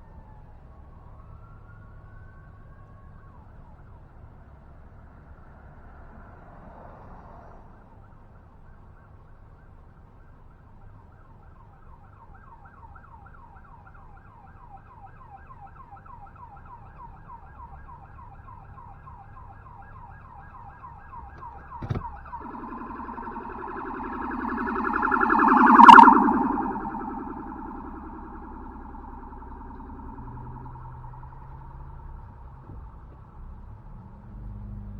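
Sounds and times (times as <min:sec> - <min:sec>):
emergency siren wailing: 0:12.2 - 0:33.2.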